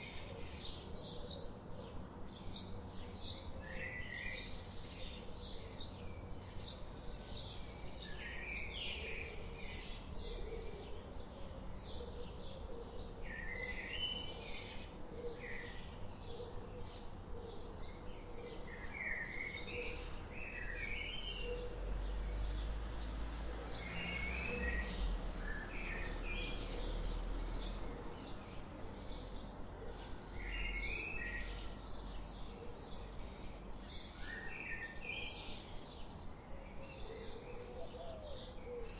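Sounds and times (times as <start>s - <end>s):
birds chirping and calling: 0.0s - 38.9s.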